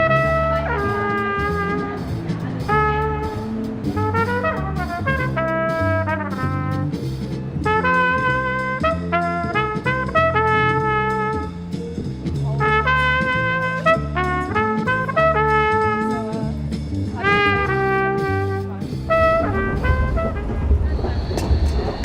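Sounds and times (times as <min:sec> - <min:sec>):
trumpet playing jazzy melody: 0:00.0 - 0:20.9
low accompaniment: 0:00.0 - 0:22.0.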